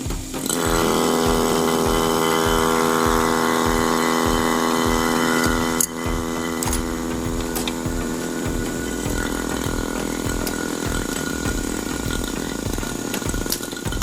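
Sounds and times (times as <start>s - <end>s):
vacuum pump humming: 0.0s - 14.0s.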